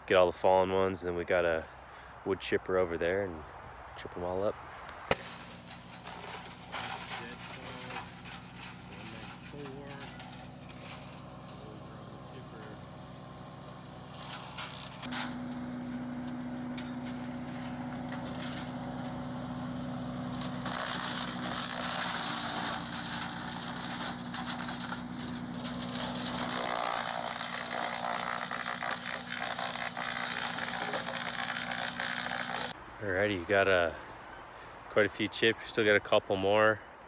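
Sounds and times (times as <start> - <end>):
branches crackling and snapping: 4.9 - 11.7, 12.6 - 32.8
wood chipper engine: 5.1 - 32.8.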